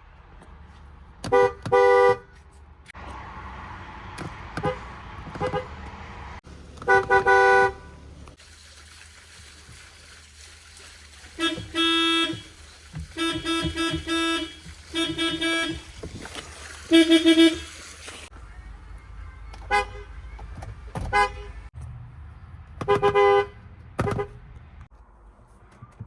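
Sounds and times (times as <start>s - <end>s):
car horn honking: 1.3s - 2.3s, 4.6s - 5.8s, 6.5s - 8.4s, 11.4s - 16.0s, 16.9s - 17.8s, 19.7s - 20.3s, 21.0s - 21.7s, 22.8s - 24.4s.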